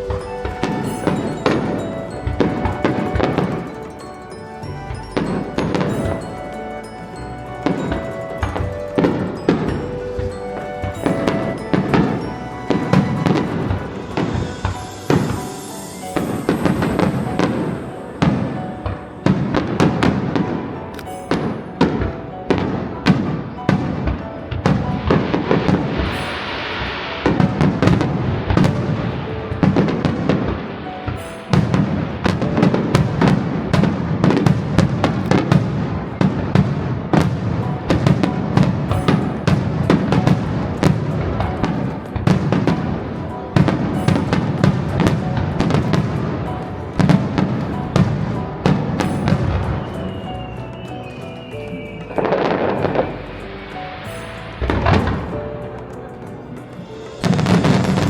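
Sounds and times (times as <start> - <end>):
firework shells bursting: 0.0 - 58.0
fireworks crackling: 0.0 - 58.0
music: 0.0 - 58.0.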